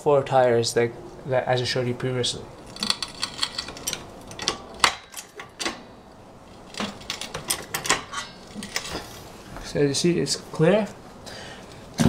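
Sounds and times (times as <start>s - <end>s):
metal tools clicking and knocking: 2.6s - 5.9s, 6.5s - 9.1s.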